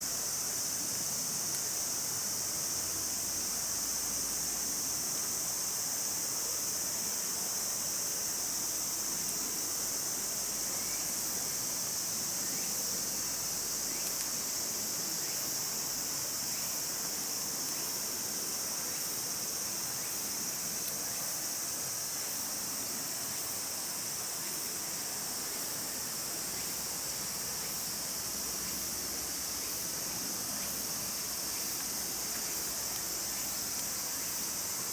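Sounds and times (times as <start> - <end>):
insects chorus drone: 0.0 - 34.9.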